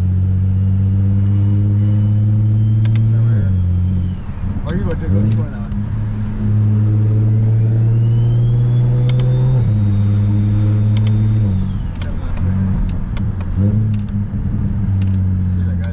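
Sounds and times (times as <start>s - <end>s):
car engine pulling hard: 0.0s - 15.9s
high turbo whine: 0.0s - 15.9s
exhaust pops and crackles: 2.8s - 5.9s, 10.8s - 15.9s.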